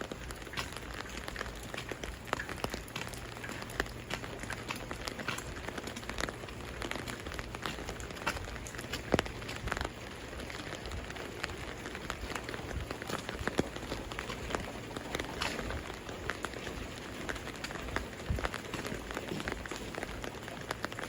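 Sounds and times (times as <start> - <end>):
rain drops tapping: 0.0 - 21.0
steady rain hiss: 0.0 - 21.0.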